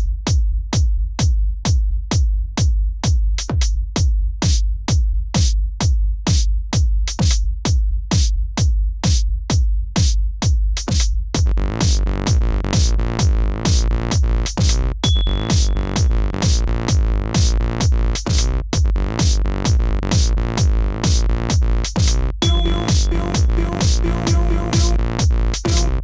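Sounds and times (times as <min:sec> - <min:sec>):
electronic dance music: 0:15.0 - 0:17.6, 0:22.0 - 0:26.0.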